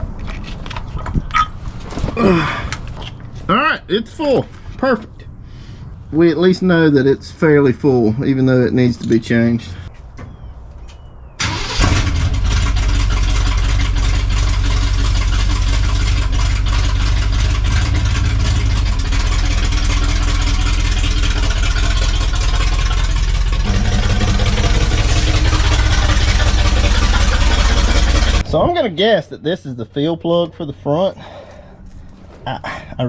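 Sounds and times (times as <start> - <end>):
pickup engine idling: 11.4 - 28.4.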